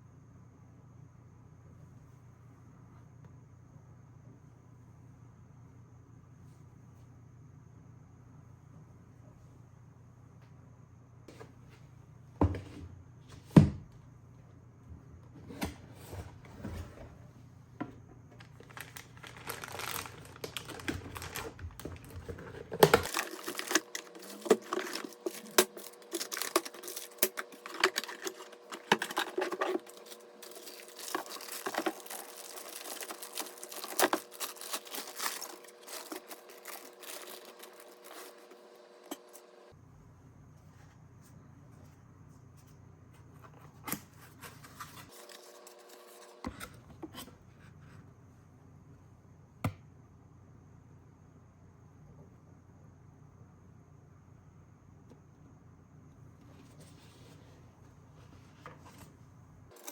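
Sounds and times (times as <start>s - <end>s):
packaging crinkling and tearing: 18.4s - 39.4s.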